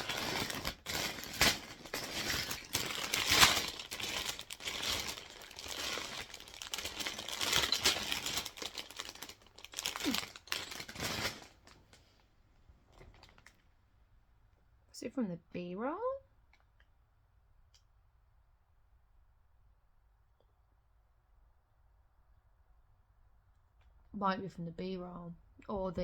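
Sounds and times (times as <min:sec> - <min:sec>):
plastic bags crinkling: 0:00.0 - 0:12.0, 0:13.0 - 0:13.6
small clicks and rattles: 0:00.0 - 0:12.0.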